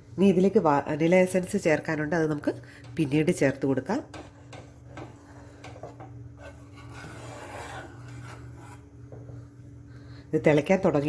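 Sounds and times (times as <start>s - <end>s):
low steady hum: 0.0s - 11.0s
spoon scraping in a pan: 4.0s - 9.4s.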